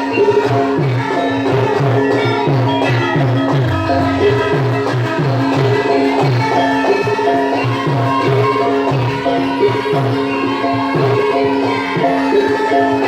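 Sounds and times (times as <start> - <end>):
music with a steady beat: 0.7 - 6.9.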